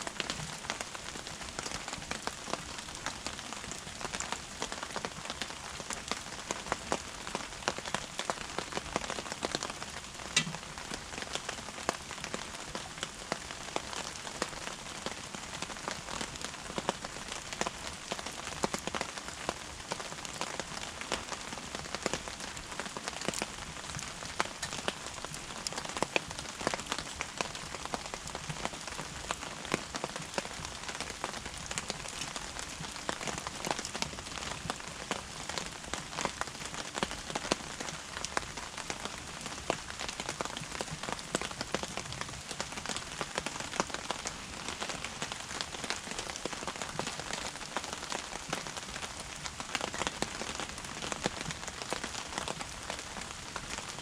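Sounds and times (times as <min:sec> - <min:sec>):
wood fire crackling: 0:07.2 - 0:13.0, 0:20.7 - 0:34.8.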